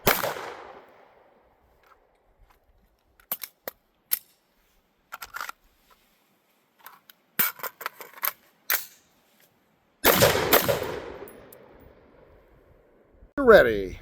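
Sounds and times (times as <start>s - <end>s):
firearms and gear clicking: 1.8s - 4.5s, 5.1s - 5.6s, 6.8s - 9.1s.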